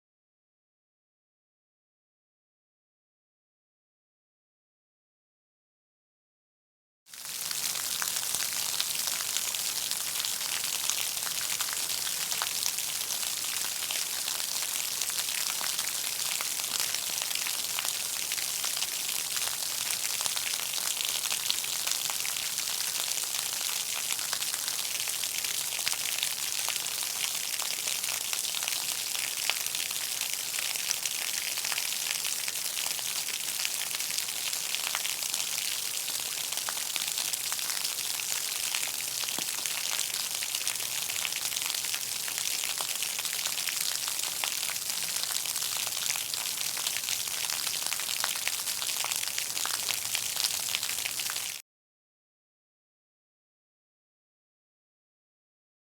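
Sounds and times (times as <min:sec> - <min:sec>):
heavy rain on pavement: 0:07.1 - 0:51.6.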